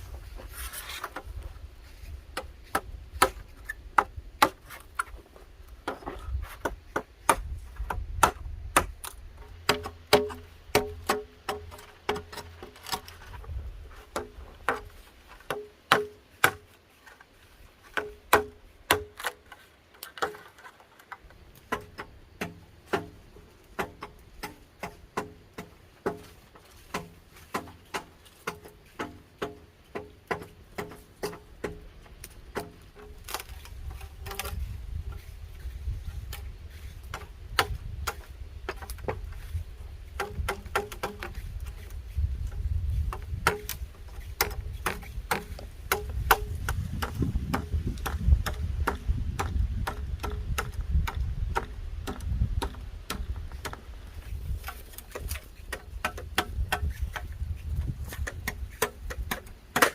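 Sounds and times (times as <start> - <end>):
sharp chopping knocks: 9.6 - 13.0, 15.5 - 16.6, 18.0 - 19.4, 40.2 - 41.4, 43.1 - 43.8, 44.4 - 53.8.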